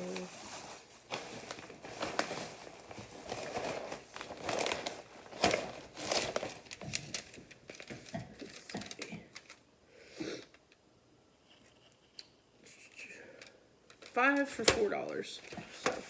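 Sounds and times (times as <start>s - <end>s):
foil pans crinkling: 0.0s - 9.6s, 14.0s - 16.0s.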